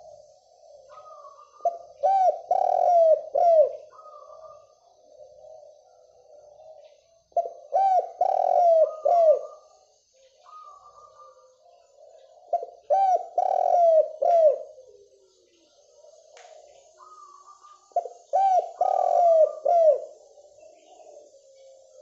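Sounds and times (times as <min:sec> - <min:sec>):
dove cooing: 0:00.0 - 0:22.0.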